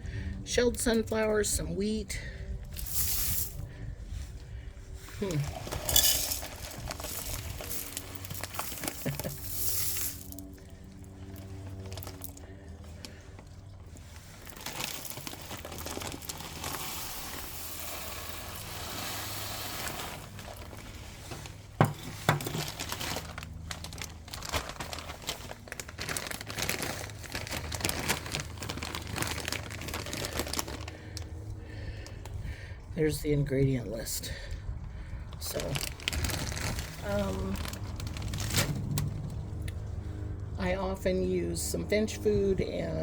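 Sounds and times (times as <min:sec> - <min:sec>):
plastic bag crinkling: 0:05.2 - 0:31.3, 0:35.4 - 0:39.9.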